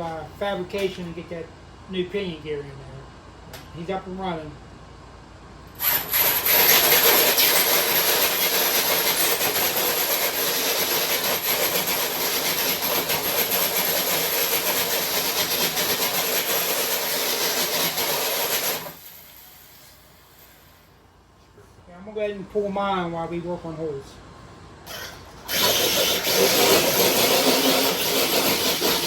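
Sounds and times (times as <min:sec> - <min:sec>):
grinding scrape on floor: 0:25.6 - 0:29.0.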